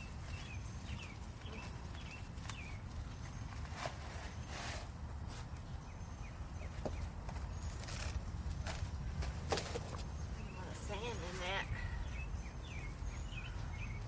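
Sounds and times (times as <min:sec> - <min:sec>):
hands scraping potting soil: 0:03.4 - 0:05.6.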